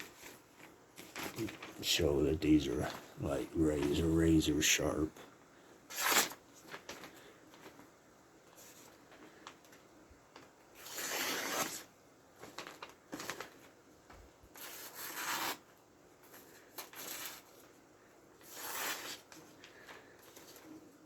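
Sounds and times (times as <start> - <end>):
knife slicing paper: 5.9 - 6.4, 10.8 - 11.9, 14.5 - 15.7, 18.4 - 19.4.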